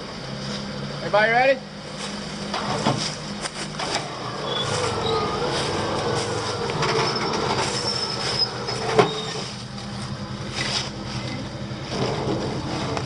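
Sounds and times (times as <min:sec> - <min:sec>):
engine running low: 0:00.0 - 0:13.0
high thin squeals and creaks: 0:04.4 - 0:09.6.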